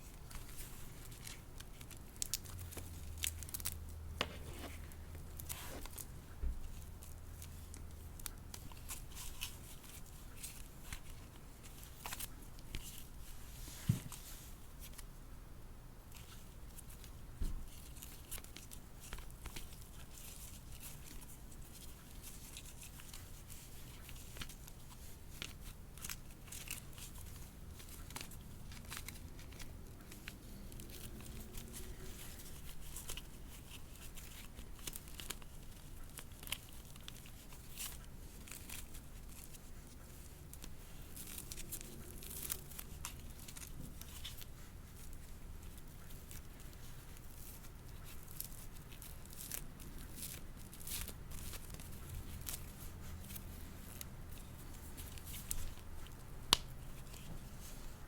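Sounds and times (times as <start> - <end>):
packaging rustling and crinkling: 16.1 - 58.0.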